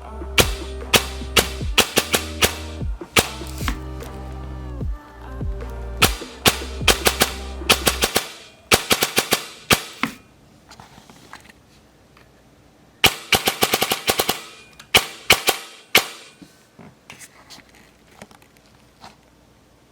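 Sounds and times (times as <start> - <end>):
airsoft gun firing bursts: 0.4 - 3.8, 6.0 - 10.2, 13.0 - 16.4.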